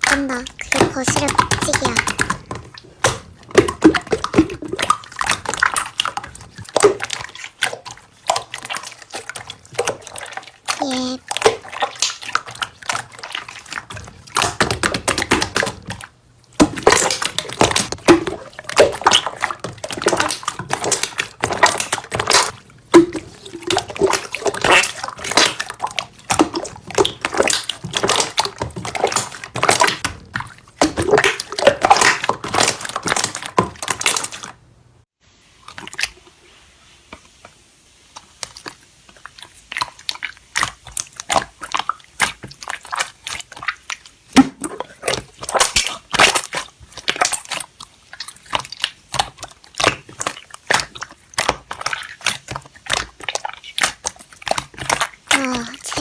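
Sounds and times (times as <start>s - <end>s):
slime squished by hand: 38.1s - 56.0s.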